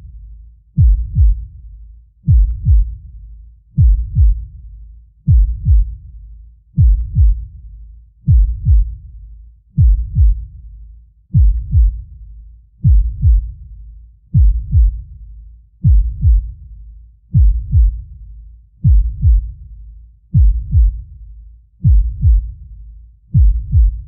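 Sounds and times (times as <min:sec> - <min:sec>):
heartbeat thumps: 0:00.7 - 0:01.5, 0:02.2 - 0:03.0, 0:03.8 - 0:04.6, 0:05.2 - 0:06.0, 0:06.8 - 0:07.6, 0:08.2 - 0:09.0, 0:09.8 - 0:10.6, 0:11.3 - 0:12.1, 0:12.8 - 0:13.6, 0:14.3 - 0:15.1, 0:15.8 - 0:16.6, 0:17.3 - 0:18.1, 0:18.8 - 0:19.6, 0:20.3 - 0:21.1, 0:21.8 - 0:22.6, 0:23.3 - 0:24.0.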